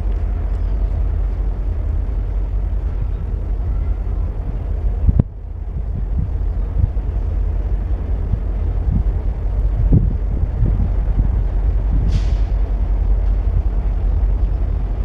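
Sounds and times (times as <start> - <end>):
diesel locomotive rumble: 0.0 - 15.0.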